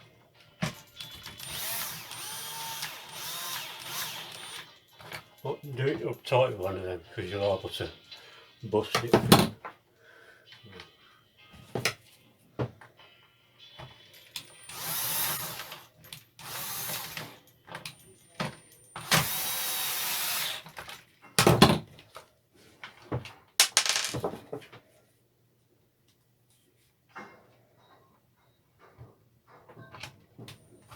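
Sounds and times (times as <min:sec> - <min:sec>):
tool clicks and knocks: 0:23.6 - 0:24.2.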